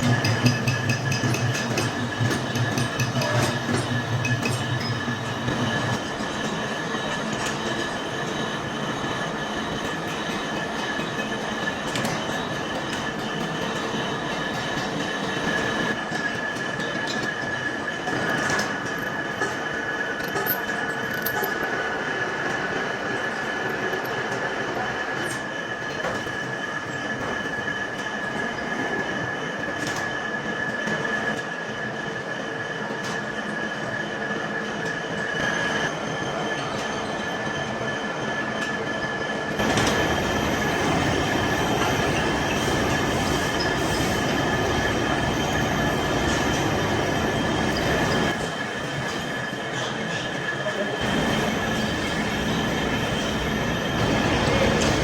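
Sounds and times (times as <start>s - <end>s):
lathe high whine: 39.0s - 55.0s.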